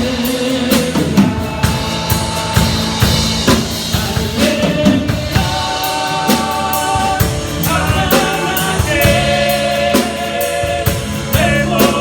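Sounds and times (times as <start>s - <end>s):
church praise band playing: 0.0s - 12.0s
drum kit steady beat: 0.0s - 12.0s
group singing: 0.0s - 12.0s.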